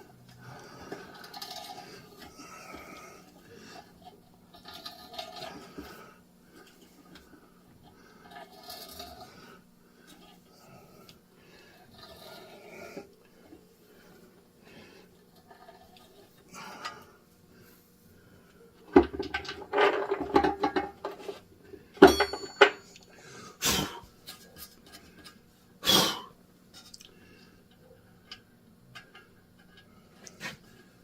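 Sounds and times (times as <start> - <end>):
faint steady hum: 0.0 - 31.0
metal tools clattering: 19.4 - 21.4, 22.0 - 23.0
metallic ring: 22.0 - 23.0.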